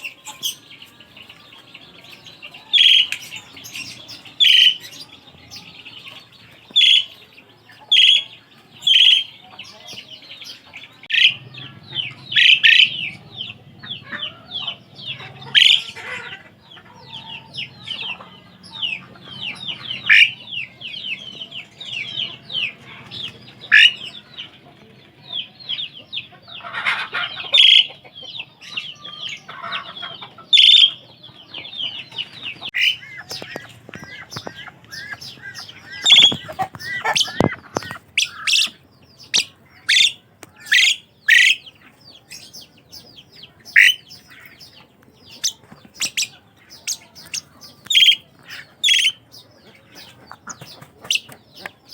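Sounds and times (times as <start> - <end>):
loud sharp bird calls: 0.0 - 24.6, 25.4 - 51.9
starling chirps and whistles: 2.7 - 5.0, 6.8 - 7.1, 7.9 - 9.4, 30.6 - 31.0, 34.3 - 51.7.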